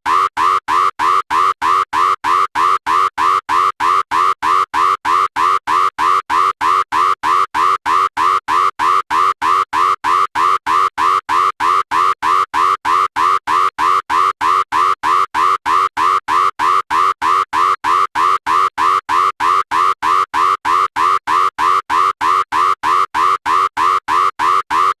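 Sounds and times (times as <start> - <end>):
electronic alarm beeping: 0.1 - 25.0.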